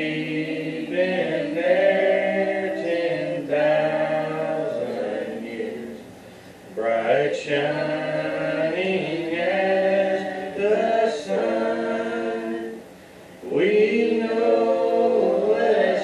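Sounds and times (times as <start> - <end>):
voices singing a hymn: 0.0 - 16.0.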